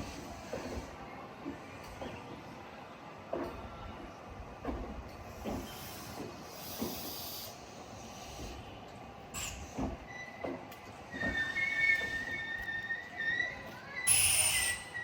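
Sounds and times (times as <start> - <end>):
compressed air hissing: 5.6 - 8.6.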